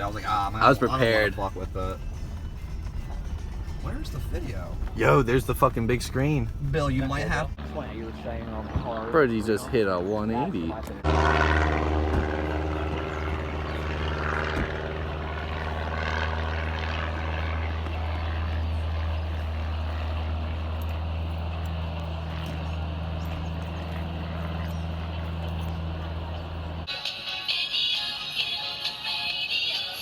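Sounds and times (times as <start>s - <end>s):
car engine drone: 0.0s - 27.1s.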